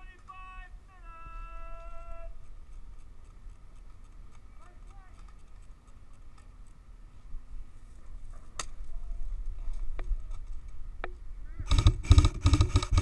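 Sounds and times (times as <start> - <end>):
faint ticks: 1.8 - 6.8
sharp clicks: 1.8 - 6.8, 11.0 - 13.0.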